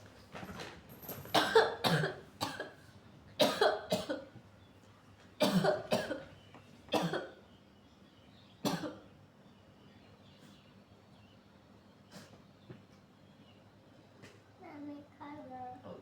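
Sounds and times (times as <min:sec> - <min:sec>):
woman coughing: 0:01.3 - 0:02.8, 0:03.4 - 0:04.3, 0:05.4 - 0:06.2, 0:06.9 - 0:07.3, 0:08.6 - 0:09.0.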